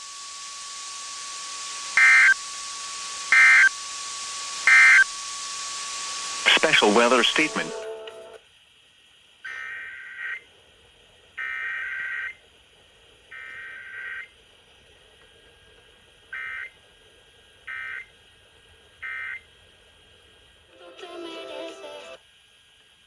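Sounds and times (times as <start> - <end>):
buzzing two-tone data bursts: 0.2 - 7.8
short data bursts: 1.9 - 2.5, 3.2 - 4.0, 4.6 - 5.2, 6.2 - 7.8.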